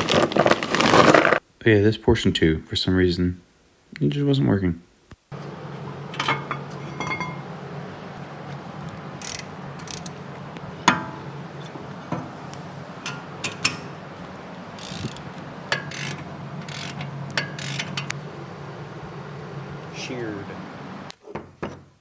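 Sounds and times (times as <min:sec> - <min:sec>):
steady low hum: 0:05.3 - 0:21.1
hand tools clinking on metal: 0:06.1 - 0:07.5, 0:13.0 - 0:14.0, 0:14.8 - 0:18.1
ratchet clicks: 0:09.2 - 0:10.2, 0:14.8 - 0:18.2.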